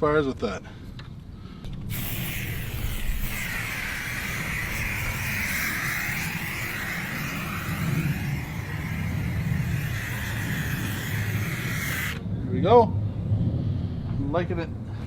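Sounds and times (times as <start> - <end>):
hissing whoosh: 1.8 - 12.4
engine running: 1.9 - 12.2.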